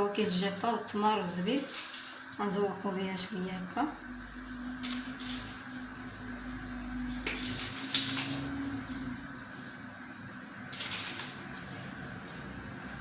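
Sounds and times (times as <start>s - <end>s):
muesli rustling and clicking: 1.3s - 2.5s, 4.5s - 5.9s, 7.0s - 9.2s, 10.7s - 12.6s.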